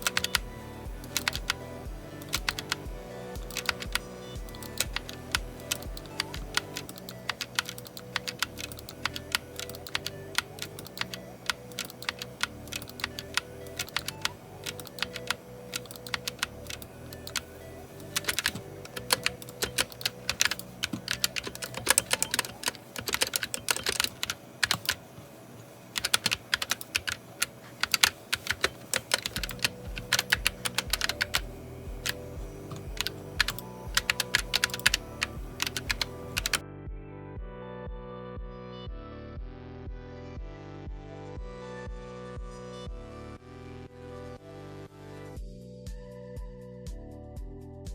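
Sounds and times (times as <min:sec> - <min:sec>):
mechanical keyboard typing: 0:00.0 - 0:01.6, 0:02.2 - 0:25.1, 0:25.9 - 0:36.6.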